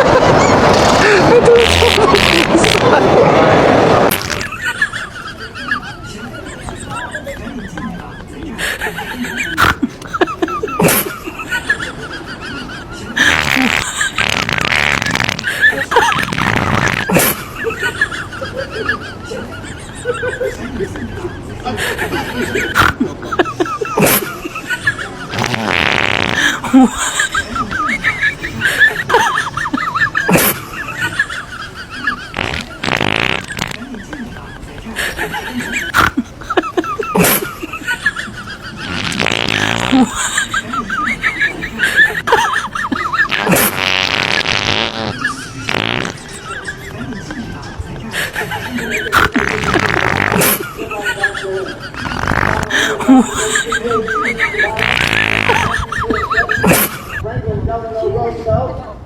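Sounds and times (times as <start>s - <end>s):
spluttering fart: 0.0s - 5.2s, 9.5s - 11.7s, 13.2s - 18.3s, 22.3s - 33.8s, 35.8s - 46.9s, 48.8s - 50.8s, 51.9s - 57.2s.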